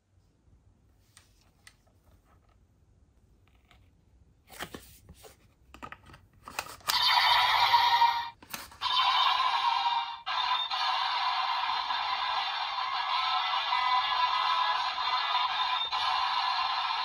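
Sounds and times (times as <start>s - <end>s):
harsh electronic sound effect: 8.8s - 17.0s.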